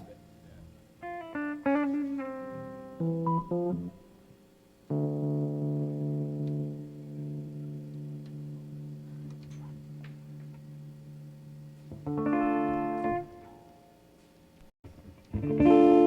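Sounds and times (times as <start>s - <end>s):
electric guitar notes and chords: 0.0s - 14.0s, 14.9s - 16.0s.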